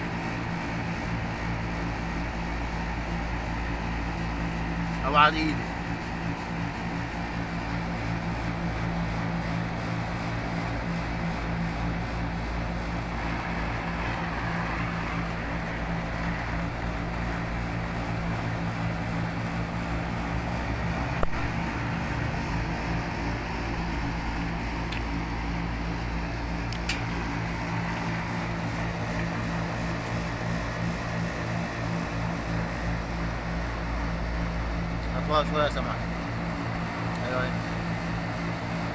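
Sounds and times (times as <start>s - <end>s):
machinery humming and rushing: 9.8s - 37.9s.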